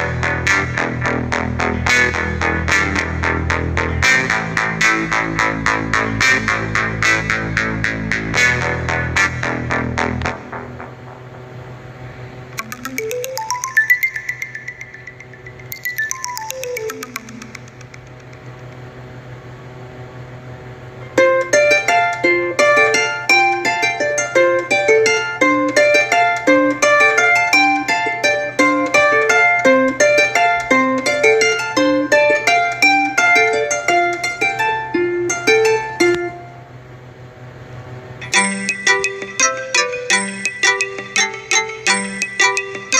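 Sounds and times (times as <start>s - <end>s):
plucked-string ringtone melody: 12.6s - 19.2s, 21.2s - 36.6s, 38.2s - 42.9s.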